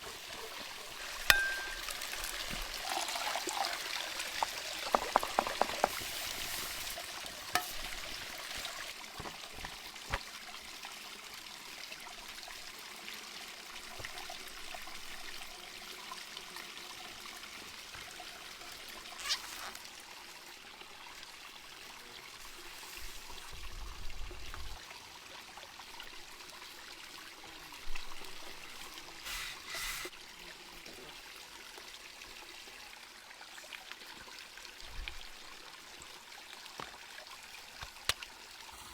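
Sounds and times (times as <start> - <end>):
stream water rushing: 0.0 - 10.2.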